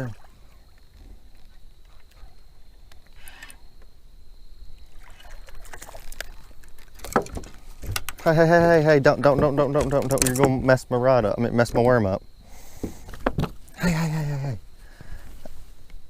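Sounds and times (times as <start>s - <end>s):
faint water splashing: 0.0s - 3.8s, 4.6s - 15.8s.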